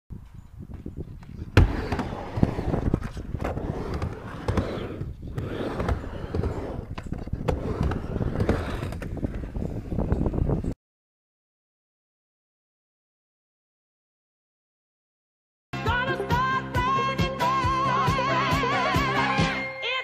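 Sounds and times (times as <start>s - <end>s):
skateboard wheels rumbling: 1.2s - 10.7s.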